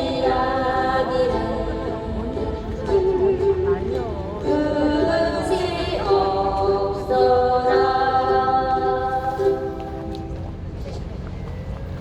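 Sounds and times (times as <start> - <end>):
group singing in unison: 0.0 - 3.2, 4.4 - 9.8.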